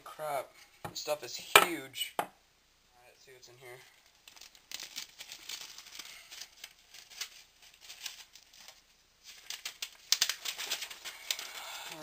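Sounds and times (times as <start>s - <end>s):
packing material crinkling and tearing: 4.0s - 12.0s.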